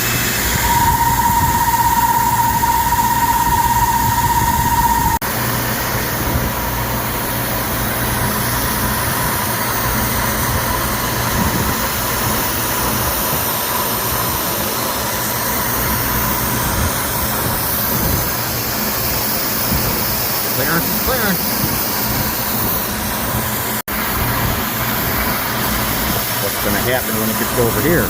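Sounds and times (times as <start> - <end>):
high spindle whine: 0.0 - 5.2, 20.5 - 21.7
milling machine running: 0.0 - 5.2.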